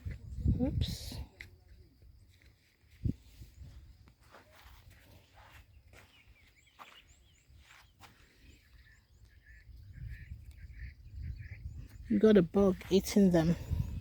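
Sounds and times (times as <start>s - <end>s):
low wind rumble on microphone: 0.0s - 4.1s, 8.8s - 14.0s
small birds chirping: 0.0s - 14.0s.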